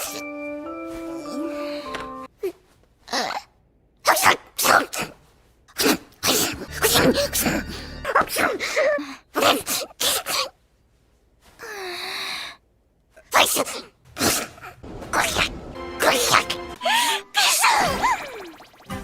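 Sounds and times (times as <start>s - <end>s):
voiced sneezes: 2.4s - 7.3s, 8.1s - 10.6s, 13.2s - 14.8s
breaths: 11.4s - 12.6s, 16.8s - 17.4s.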